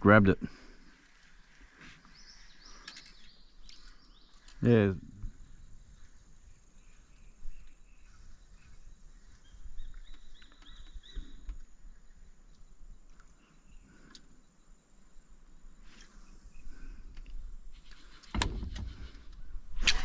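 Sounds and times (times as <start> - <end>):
bird chirps: 1.8 - 16.8.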